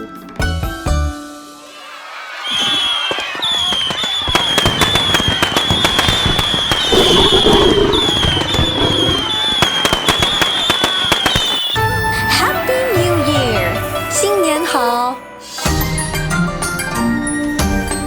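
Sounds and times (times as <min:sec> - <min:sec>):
firecrackers popping: 0:02.4 - 0:11.8.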